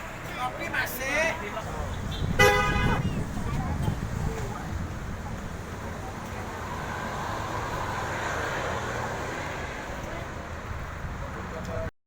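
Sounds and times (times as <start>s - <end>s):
vehicle driving past: 5.6s - 10.8s.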